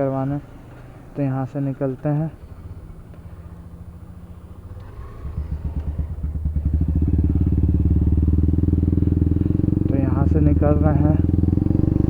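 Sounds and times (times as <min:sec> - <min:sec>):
motorcycle engine accelerating: 0:03.4 - 0:12.0.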